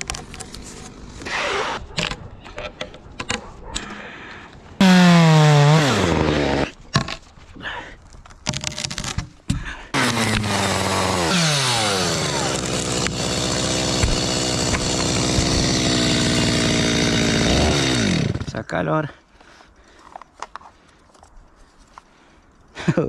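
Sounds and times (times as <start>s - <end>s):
chainsaw engine revving: 4.8s - 6.7s, 9.9s - 18.6s.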